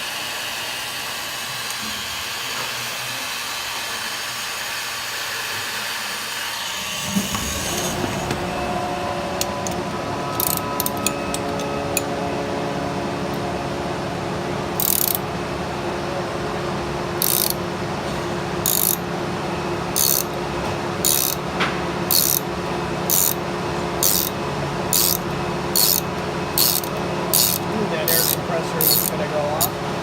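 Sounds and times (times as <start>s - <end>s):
heat gun humming: 0.0s - 11.6s, 24.0s - 29.8s
ratcheting bursts: 14.8s - 15.2s, 17.2s - 17.6s, 18.7s - 19.0s, 21.0s - 21.4s, 22.1s - 22.5s, 23.1s - 23.4s, 24.0s - 25.2s, 25.8s - 29.8s.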